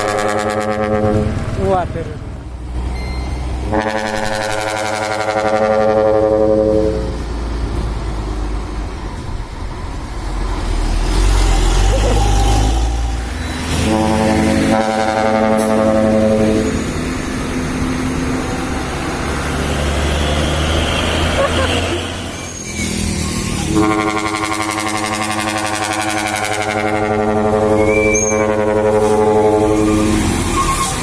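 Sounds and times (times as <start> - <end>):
truck air horn blasts: 0.0 - 1.4, 3.6 - 7.4, 11.9 - 17.2, 19.6 - 22.6, 23.6 - 31.0
truck engine rumbling: 0.0 - 31.0.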